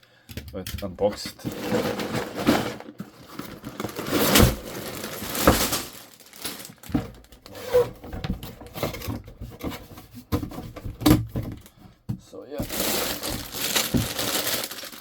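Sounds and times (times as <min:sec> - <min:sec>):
packaging crinkling: 0:01.4 - 0:07.5, 0:12.6 - 0:15.0
cardboard box tearing: 0:01.5 - 0:07.0, 0:12.6 - 0:15.0.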